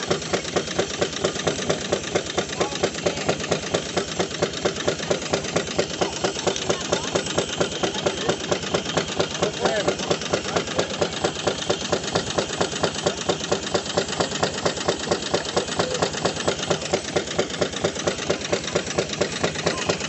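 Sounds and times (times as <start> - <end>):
steam traction engine running: 0.0 - 20.0.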